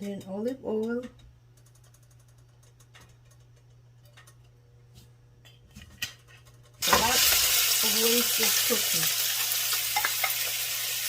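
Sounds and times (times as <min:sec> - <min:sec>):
food sizzling in hot oil: 0:06.8 - 0:11.0.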